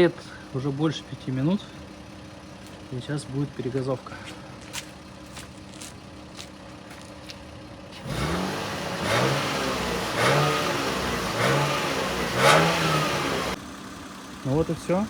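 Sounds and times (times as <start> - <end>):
car engine idling and revving: 0.0 - 15.0.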